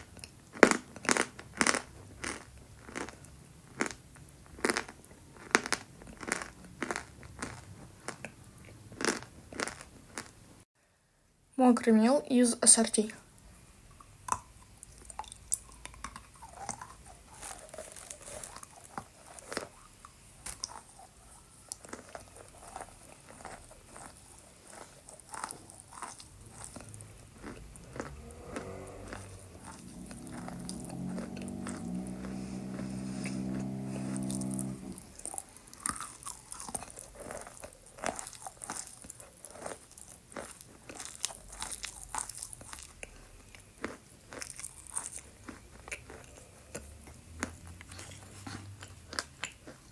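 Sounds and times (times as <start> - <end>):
chalk crunching being chewed: 0.0 - 10.4, 14.0 - 49.9
low hum with stepping pitch: 25.7 - 35.4.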